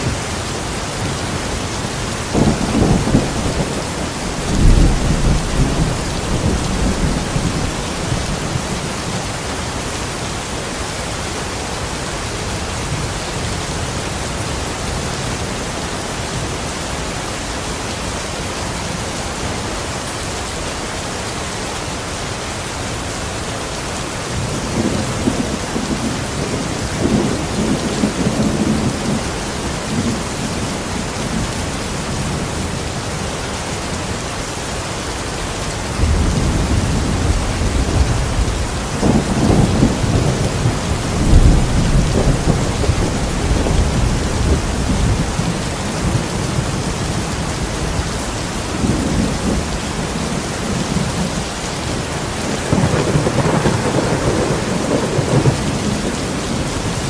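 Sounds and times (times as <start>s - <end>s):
thunder rumbling: 0.0s - 10.0s, 35.8s - 57.0s
steady rain: 0.0s - 57.0s.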